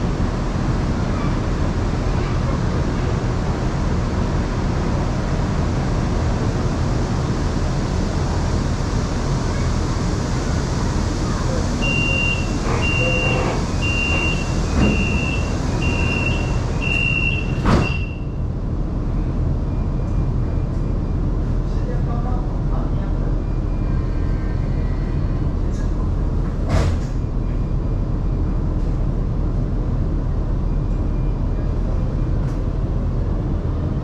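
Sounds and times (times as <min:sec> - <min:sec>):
train interior rumble: 0:00.0 - 0:34.0
electronic warning beeps: 0:11.8 - 0:18.2.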